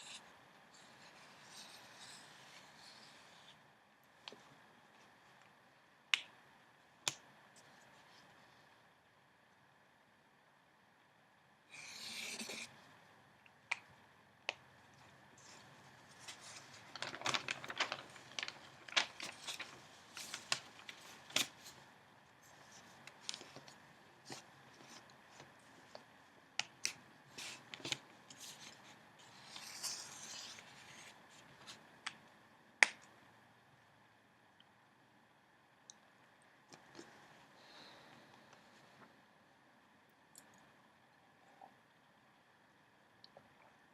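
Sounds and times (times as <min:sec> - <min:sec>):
pages turning: 0:15.4 - 0:21.8, 0:27.3 - 0:31.8
paper crackles and taps: 0:16.2 - 0:21.5.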